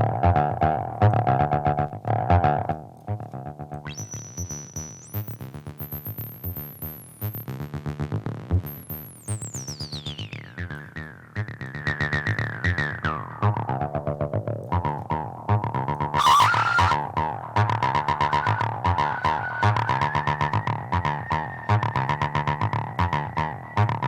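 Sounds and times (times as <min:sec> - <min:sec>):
distorted synth bass line: 0:00.0 - 0:24.0
high whistling feedback tone: 0:16.2 - 0:17.1, 0:18.2 - 0:23.0.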